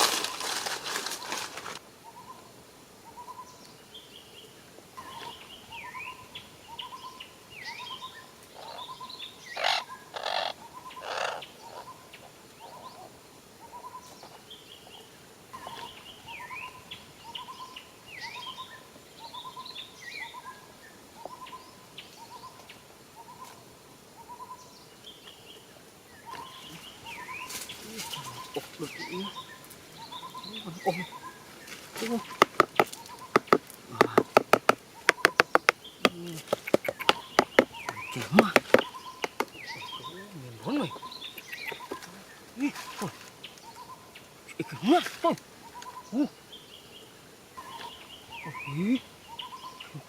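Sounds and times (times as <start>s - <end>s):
birds calling: 0.0s - 50.0s
rustling knocks: 31.9s - 39.8s.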